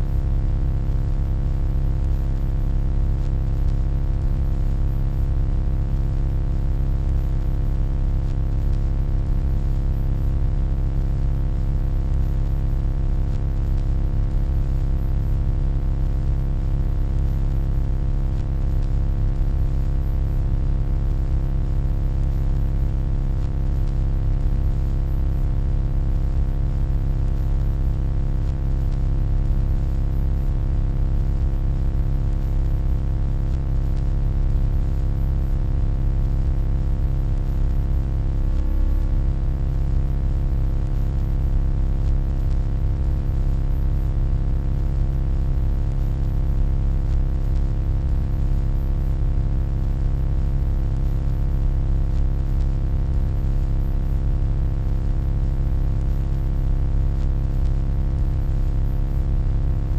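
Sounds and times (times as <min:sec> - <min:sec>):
deep electronic hum: 0:37.4 - 0:41.4.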